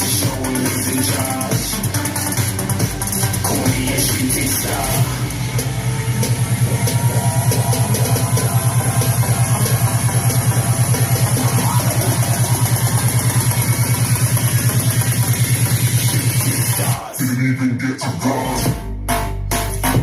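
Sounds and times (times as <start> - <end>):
pop song with heavy bass: 0.0 - 20.0.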